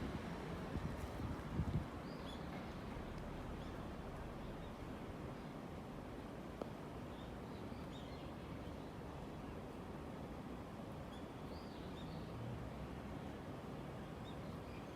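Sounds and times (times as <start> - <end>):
low background rumble: 0.0 - 7.2
small birds chirping: 2.0 - 5.5.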